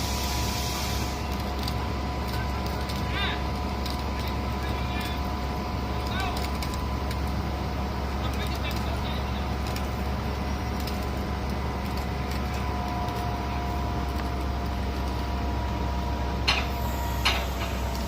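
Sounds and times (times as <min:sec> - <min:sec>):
diesel machinery droning: 0:00.0 - 0:18.0.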